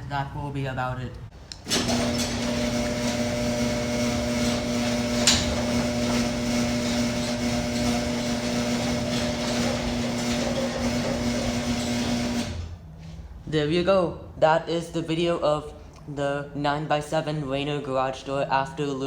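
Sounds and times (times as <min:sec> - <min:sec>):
garage door opener motor hum: 0:01.6 - 0:12.8.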